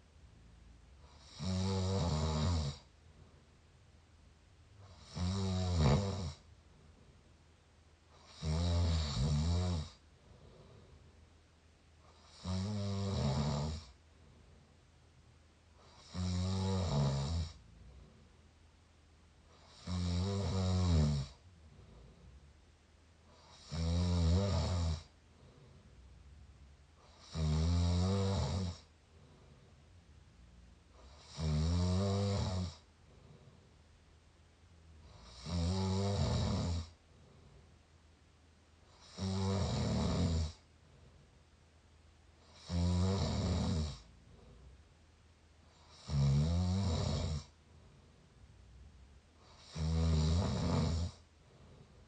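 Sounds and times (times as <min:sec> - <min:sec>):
quiet breathing: 0:00.0 - 0:52.0
person snoring: 0:01.0 - 0:02.9, 0:04.8 - 0:06.5, 0:08.1 - 0:10.9, 0:12.0 - 0:14.0, 0:15.8 - 0:17.6, 0:19.5 - 0:22.4, 0:23.3 - 0:25.6, 0:27.0 - 0:28.9, 0:30.9 - 0:33.4, 0:35.0 - 0:37.0, 0:38.9 - 0:40.6, 0:42.4 - 0:44.1, 0:45.7 - 0:47.6, 0:49.4 - 0:51.2.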